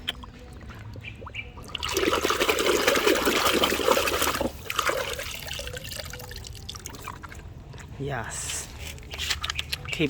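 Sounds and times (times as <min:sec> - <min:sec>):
water running and splashing: 0:01.6 - 0:07.5.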